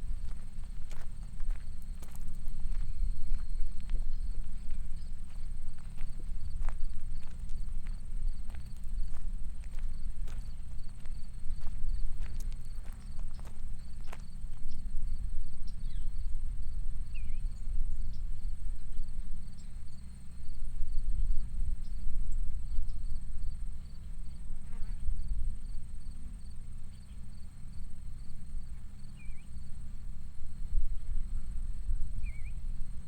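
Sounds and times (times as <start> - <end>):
insect chirping: 0.0 - 22.0, 22.6 - 33.0
low uneven rumble: 0.0 - 33.0
faint bird chirp: 2.0 - 7.5, 15.6 - 16.3, 17.1 - 18.3, 29.0 - 29.6, 32.2 - 32.7.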